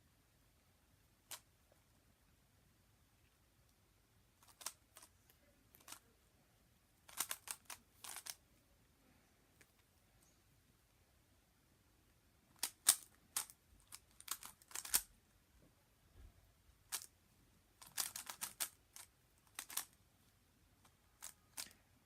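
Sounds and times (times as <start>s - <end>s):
puzzle cube plastic clicks: 4.4s - 5.1s, 5.7s - 6.0s, 7.1s - 8.4s, 12.5s - 15.1s, 16.9s - 17.1s, 17.8s - 20.0s, 20.8s - 21.8s.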